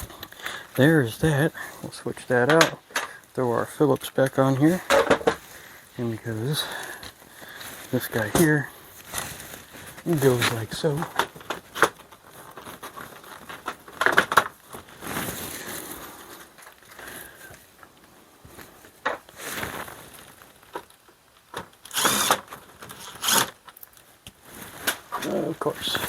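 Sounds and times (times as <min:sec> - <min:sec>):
power drill driving screws: 0:21.9 - 0:23.5.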